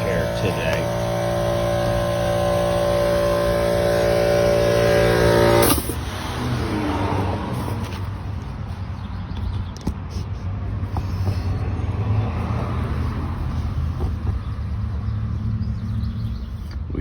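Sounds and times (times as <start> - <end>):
motor running: 0.0 - 8.2.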